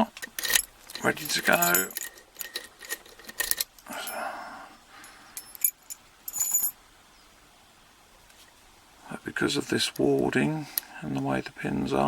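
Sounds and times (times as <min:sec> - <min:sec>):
lock-picking tools clicking: 0:00.0 - 0:03.9, 0:05.4 - 0:06.7
high metallic rings: 0:00.4 - 0:04.3, 0:05.0 - 0:06.8.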